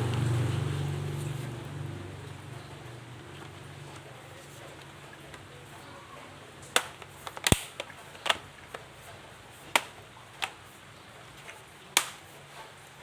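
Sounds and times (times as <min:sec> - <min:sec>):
laptop parts clicking: 0:06.7 - 0:08.9.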